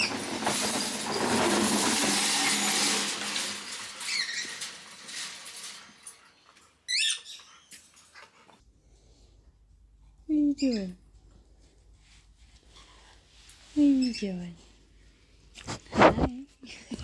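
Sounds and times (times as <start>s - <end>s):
birds squeaky chirps: 6.9s - 8.0s.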